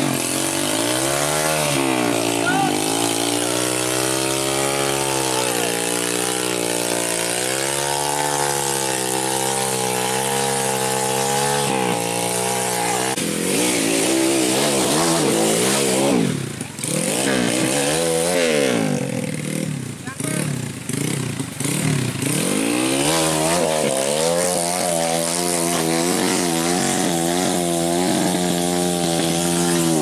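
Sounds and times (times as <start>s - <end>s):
motorcycle engines revving: 0.0s - 30.0s.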